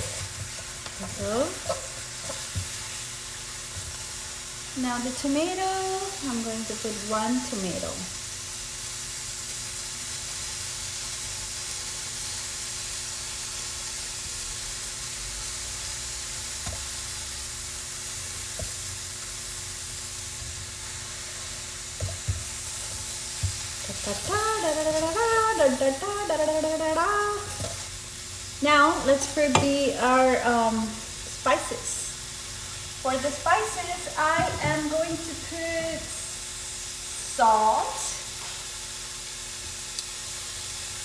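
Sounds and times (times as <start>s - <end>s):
vegetables sizzling in a pan: 0.0s - 41.0s
utensil knocking against pan: 29.5s - 29.8s, 34.3s - 35.4s
person speaking: 33.0s - 36.4s.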